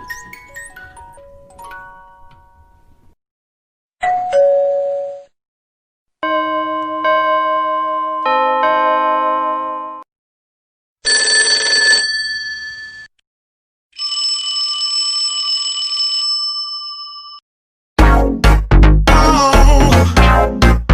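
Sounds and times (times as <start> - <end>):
loud electronic music: 18.0 - 20.9.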